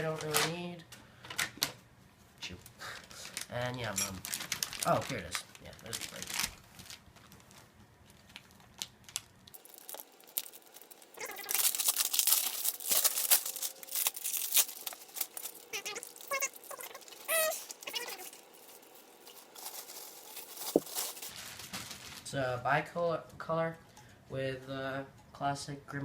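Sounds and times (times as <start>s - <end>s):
plastic packaging crinkling and tearing: 2.9s - 22.4s
plastic rubbing squeaks: 9.9s - 21.3s.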